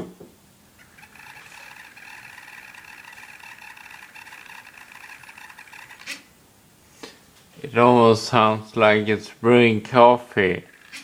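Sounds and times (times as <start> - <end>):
laptop high buzzing whir: 0.7 - 6.3, 10.6 - 11.0.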